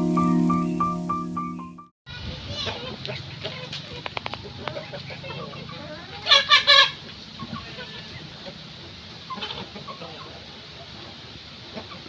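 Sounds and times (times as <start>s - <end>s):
chickens clucking: 2.7s - 12.0s
loud chicken calls: 4.5s - 8.3s.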